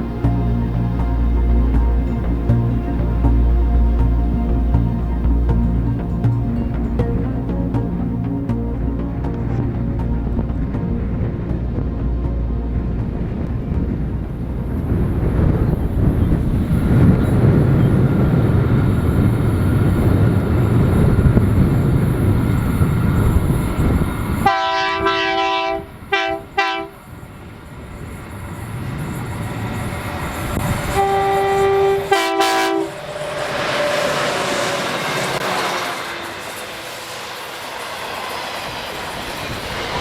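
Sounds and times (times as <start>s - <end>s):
diesel locomotive rumbling: 0.0s - 40.0s
wagons rolling with rail hiss: 13.1s - 40.0s
train air horn blasts: 24.4s - 27.0s, 30.9s - 34.9s.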